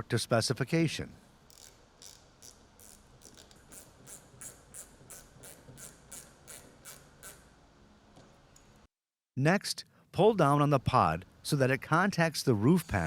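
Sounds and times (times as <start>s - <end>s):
ratchet wrench clicking: 1.5s - 7.5s.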